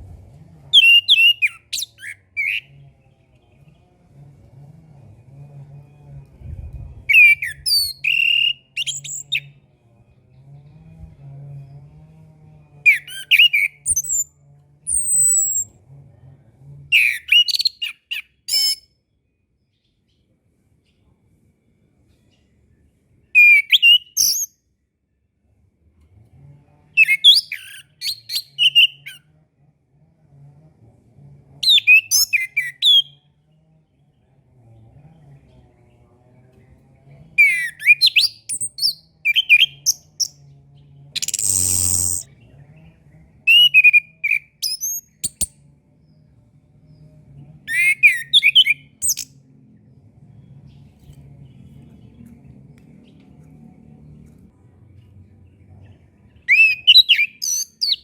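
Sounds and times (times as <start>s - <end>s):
thrush singing whistles and trills: 7.1s - 9.5s, 17.0s - 18.8s, 23.4s - 24.5s, 31.6s - 33.2s, 41.2s - 42.3s, 43.5s - 45.5s, 47.7s - 49.3s, 56.5s - 58.0s.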